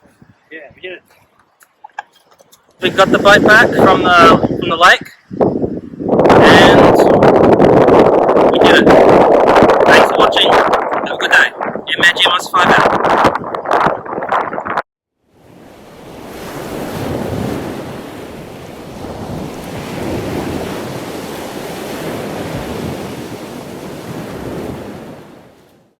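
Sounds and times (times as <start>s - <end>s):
wind rushing across microphone: 0.0s - 1.4s, 2.4s - 26.0s.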